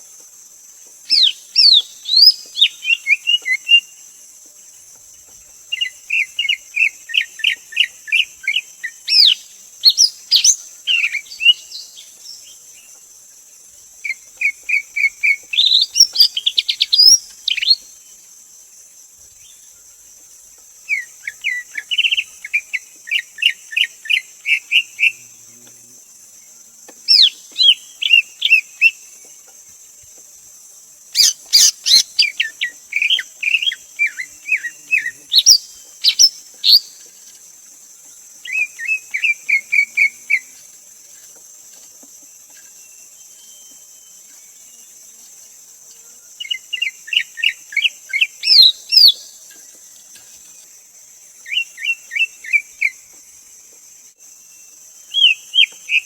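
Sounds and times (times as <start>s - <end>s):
steady high hiss: 0.0s - 56.0s
bird singing chirps and whistles: 14.4s - 17.9s, 27.1s - 29.0s, 31.2s - 37.0s, 42.8s - 44.2s, 46.4s - 49.3s, 55.1s - 56.0s.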